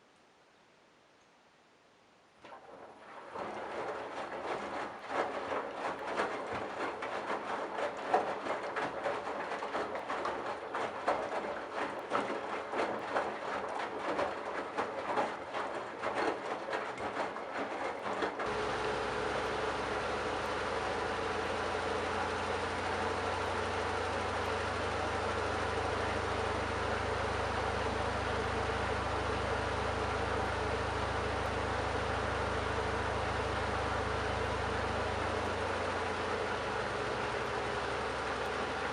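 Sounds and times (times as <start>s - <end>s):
water sloshing and knocking: 2.5s - 29.7s
motor hum: 2.6s - 38.9s
washing machine drum turning: 18.4s - 38.9s.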